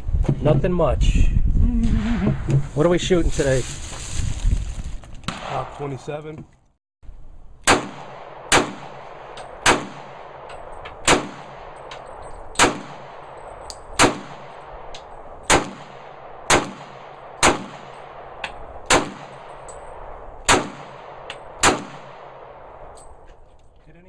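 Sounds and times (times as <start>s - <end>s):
gunshots: 5.3s - 6.0s, 7.6s - 13.4s, 14.0s - 19.7s, 20.4s - 22.9s
fainter sharp cracks: 7.6s - 19.8s, 20.4s - 23.0s.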